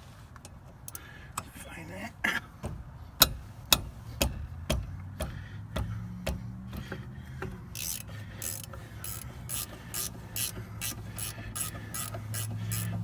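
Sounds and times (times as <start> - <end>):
ratchet clicking: 3.2 - 13.0.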